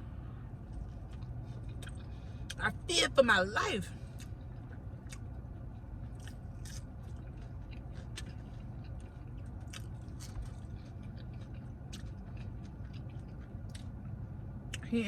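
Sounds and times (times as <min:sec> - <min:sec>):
person chewing a burger: 0:00.0 - 0:02.6, 0:04.0 - 0:14.8
steady low hum: 0:00.0 - 0:15.0
mouth clicks and crunches: 0:04.2 - 0:14.9.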